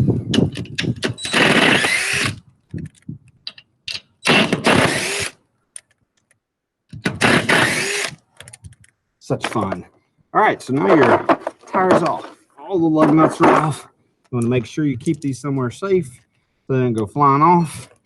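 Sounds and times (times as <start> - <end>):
power tool whining: 0.9 - 2.4, 4.2 - 5.4, 7.1 - 8.2.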